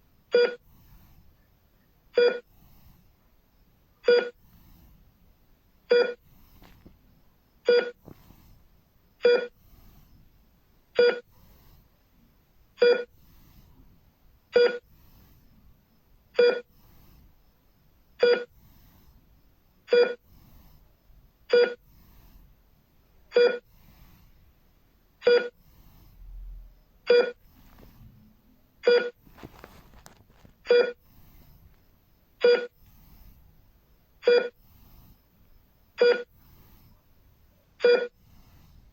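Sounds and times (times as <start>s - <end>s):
heart-rate monitor beeping: 0.3s - 2.8s, 4.0s - 4.8s, 5.9s - 8.5s, 9.2s - 9.9s, 10.9s - 11.6s, 12.8s - 13.6s, 14.5s - 15.3s, 16.3s - 19.0s, 19.8s - 20.5s, 21.4s - 22.1s, 23.3s - 23.9s, 25.2s - 25.9s, 26.5s - 28.0s, 28.8s - 33.2s, 34.2s - 35.0s, 35.8s - 36.8s, 37.8s - 38.4s.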